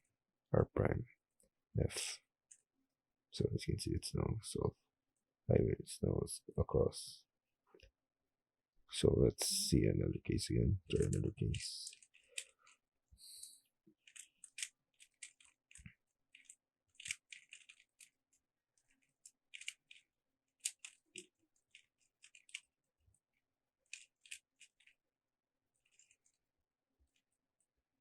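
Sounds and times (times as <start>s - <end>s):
puzzle cube plastic clicks: 10.9s - 12.7s, 13.9s - 22.9s, 23.8s - 25.0s, 25.7s - 26.4s.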